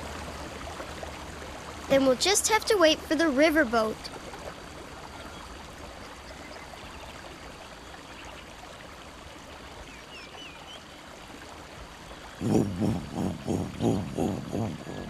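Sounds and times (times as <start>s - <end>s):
river flowing: 7.1s - 15.0s.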